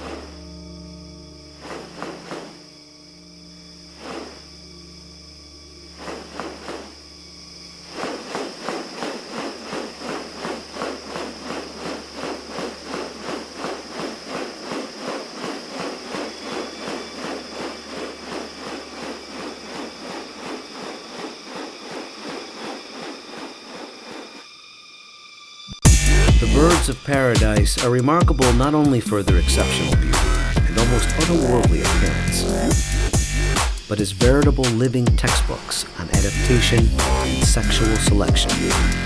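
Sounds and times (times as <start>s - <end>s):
insects droning high-pitched: 0.0s - 39.0s
fast even pulsing: 7.8s - 24.4s.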